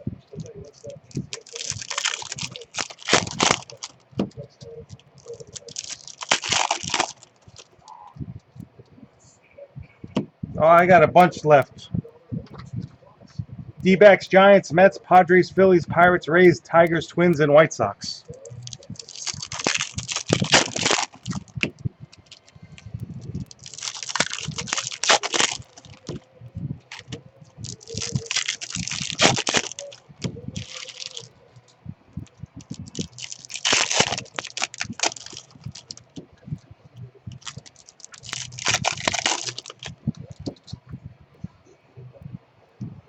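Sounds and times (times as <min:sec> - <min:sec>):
close clicking and rustling: 0:00.3 - 0:09.0, 0:18.2 - 0:40.9.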